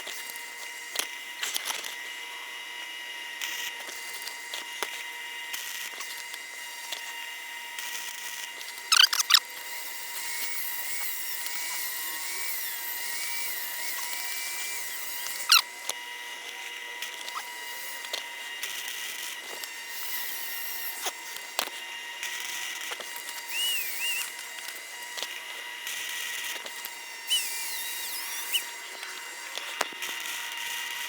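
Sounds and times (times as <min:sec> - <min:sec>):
sharp clicks: 0:08.9 - 0:09.4.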